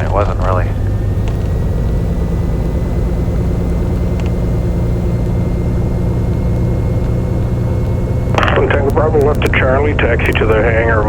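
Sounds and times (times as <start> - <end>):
piston aircraft engine running: 0.0 - 11.0.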